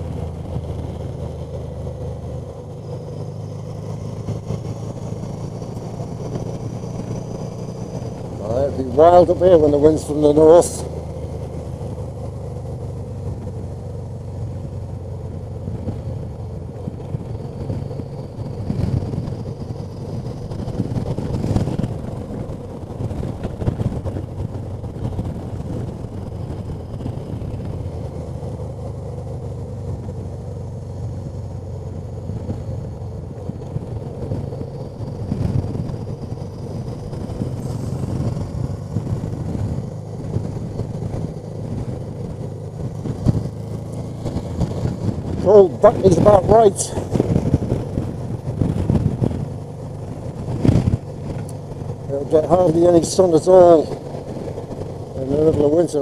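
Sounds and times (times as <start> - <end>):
motorcycle engine running: 0.0 - 56.0
wind noise on microphone: 17.1 - 28.3, 33.4 - 56.0.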